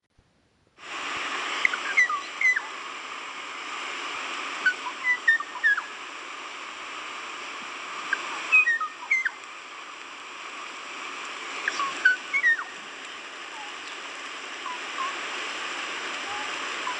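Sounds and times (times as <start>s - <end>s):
steady hiss: 0.2s - 16.9s
bird whistling sliding notes: 1.6s - 2.8s, 4.6s - 6.0s, 8.1s - 9.4s, 11.6s - 12.8s.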